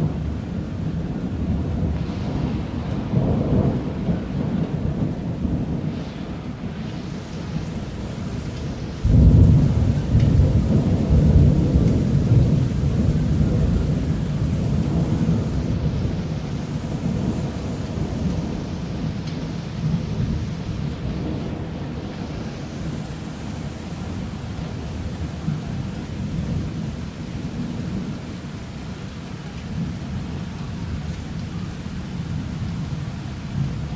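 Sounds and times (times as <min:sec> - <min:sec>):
rain hissing: 0:00.0 - 0:33.9
thunder rumbling: 0:00.0 - 0:33.9.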